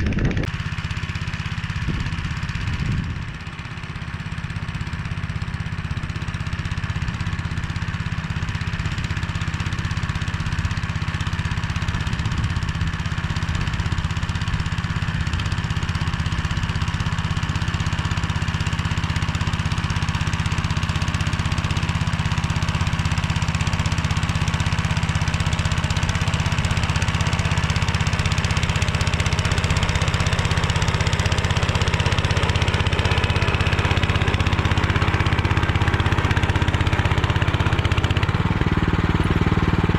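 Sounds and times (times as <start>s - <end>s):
rotary tiller through soil: 0.0s - 39.9s
walk-behind tractor engine running: 0.0s - 39.9s.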